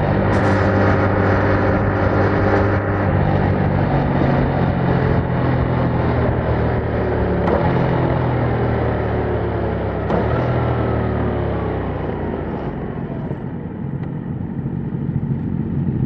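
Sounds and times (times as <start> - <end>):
motorcycle engine running: 0.0 - 16.0.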